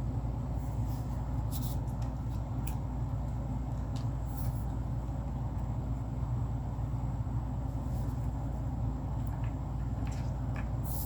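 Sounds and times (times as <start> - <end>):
steady low room hum: 0.0 - 11.0.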